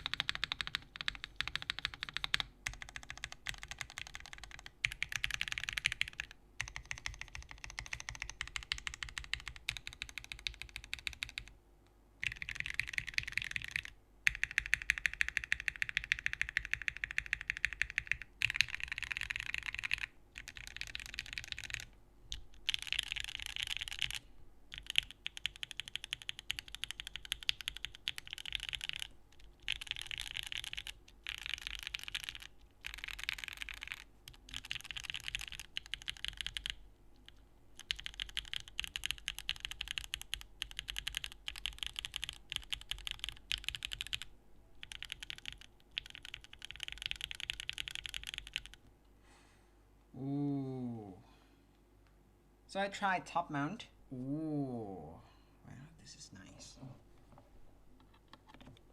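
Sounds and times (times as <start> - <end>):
fast typing on mechanical keyboard: 0.0 - 11.5, 12.2 - 48.8
short voice sound: 50.2 - 51.2, 54.1 - 55.3.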